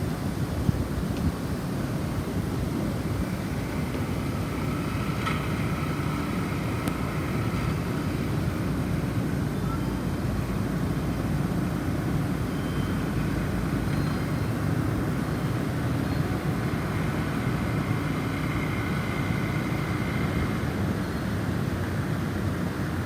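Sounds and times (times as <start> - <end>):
wind deep rumble: 0.0 - 12.5.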